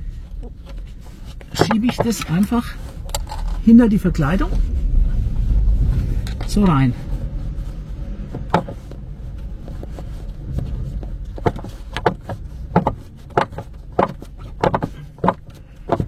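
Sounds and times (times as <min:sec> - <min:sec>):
plastic trim clicking and knocking: 0:11.4 - 0:16.0.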